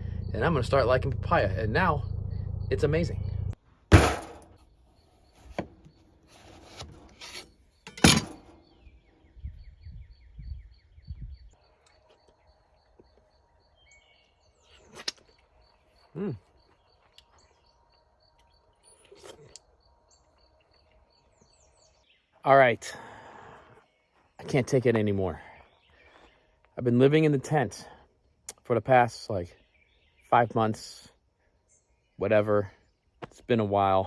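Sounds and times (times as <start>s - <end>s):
sharp knock: 3.9s - 4.5s.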